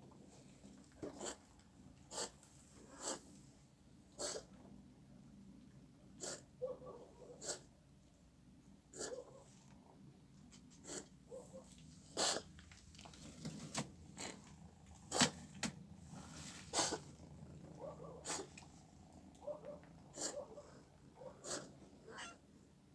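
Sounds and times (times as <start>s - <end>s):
cat snuffling: 2.1s - 3.3s, 6.2s - 6.5s, 7.4s - 7.7s, 10.7s - 11.2s, 12.0s - 12.6s, 15.0s - 19.2s, 20.0s - 22.0s
cat sneezing and coughing: 12.2s - 12.5s.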